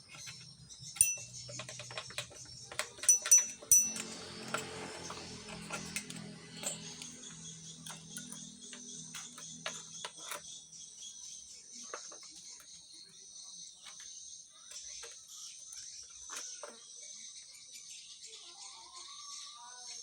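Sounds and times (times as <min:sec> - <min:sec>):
sharp clicks and knocks: 0:00.0 - 0:10.6.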